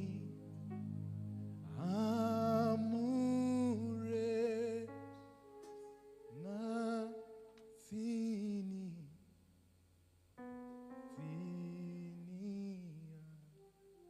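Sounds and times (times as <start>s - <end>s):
sustained keyboard chord: 0.0s - 8.2s, 10.4s - 12.4s.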